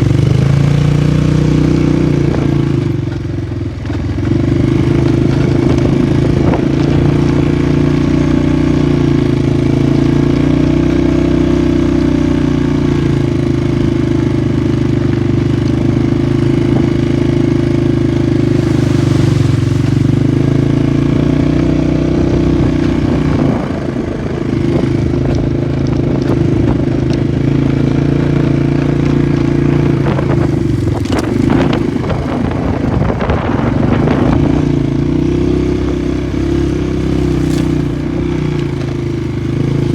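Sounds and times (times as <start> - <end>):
atv engine running: 0.0 - 39.9
machine rattling over rough ground: 15.2 - 39.9.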